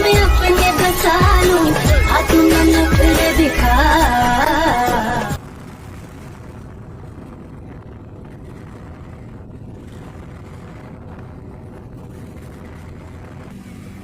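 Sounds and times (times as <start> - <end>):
background music: 0.0 - 5.4
motorcycle engine humming: 0.0 - 14.0.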